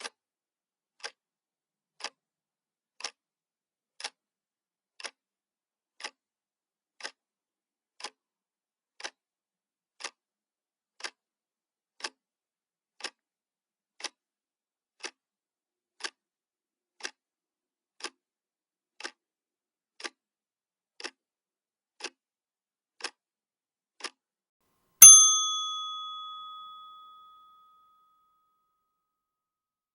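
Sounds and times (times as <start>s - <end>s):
bell strike: 25.0s - 27.2s.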